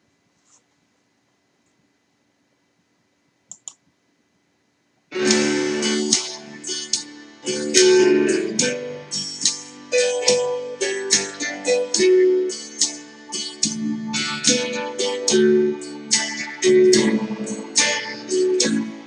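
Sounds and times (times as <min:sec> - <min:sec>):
faint clicks: 0:03.5 - 0:04.0
keyboard chords instrumental music: 0:05.1 - 0:19.0.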